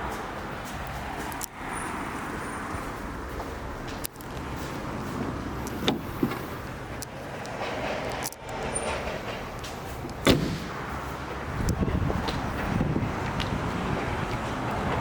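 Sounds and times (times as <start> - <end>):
sharp knocks: 10.2 - 10.8.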